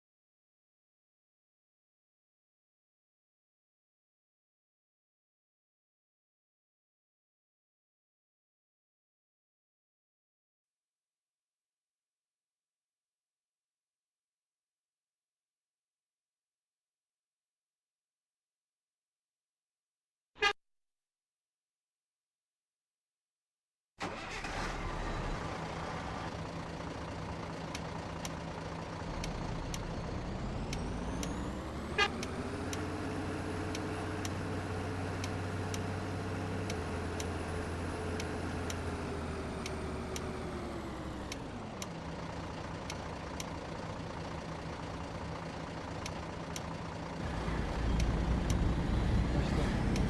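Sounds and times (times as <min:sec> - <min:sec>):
bus diesel engine revving: 0:24.0 - 0:50.0.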